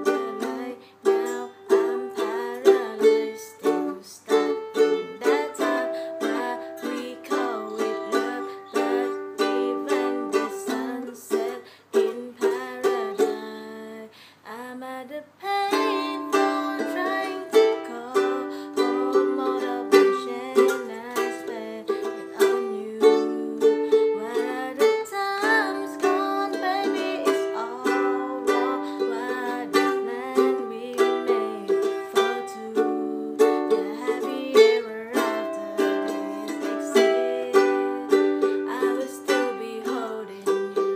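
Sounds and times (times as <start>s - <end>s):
ukulele strumming: 0.0s - 14.1s, 15.5s - 40.9s.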